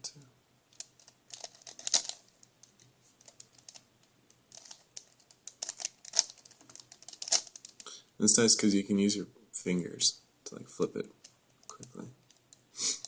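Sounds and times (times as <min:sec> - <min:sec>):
plastic cube layers clicking: 0:00.8 - 0:03.8, 0:04.5 - 0:07.8.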